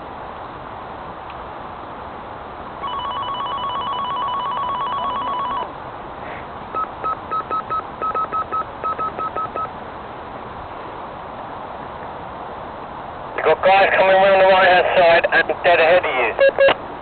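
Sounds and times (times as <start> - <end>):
trilling two-tone electronic ring: 2.8 - 5.7, 6.8 - 9.7
short electronic beeps: 6.8 - 9.7, 16.4 - 16.8.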